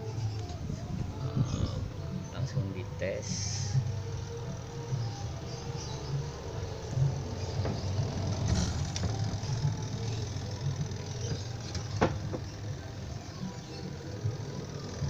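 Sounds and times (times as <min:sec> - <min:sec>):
spin dryer motor humming: 0:06.1 - 0:15.0.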